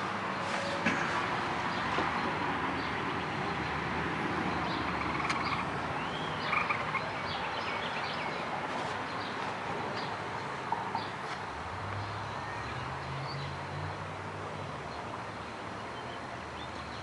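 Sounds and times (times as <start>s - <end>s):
outdoor background noise: 0.0s - 17.0s
birds chirping: 1.7s - 11.2s.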